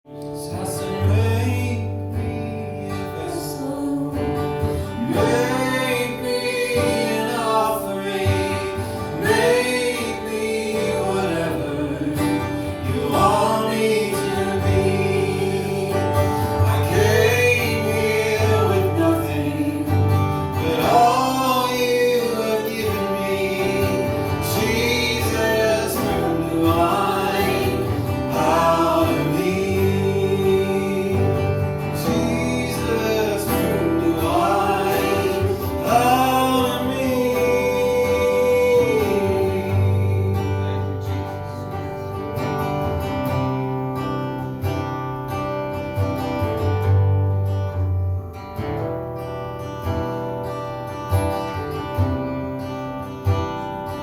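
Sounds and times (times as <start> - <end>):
person singing: 0.1 - 42.2
guitar playing: 0.1 - 54.0.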